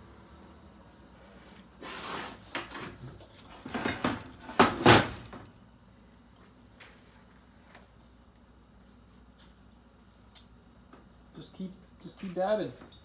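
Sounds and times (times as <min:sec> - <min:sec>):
metal clattering and knocking: 0:02.7 - 0:05.4.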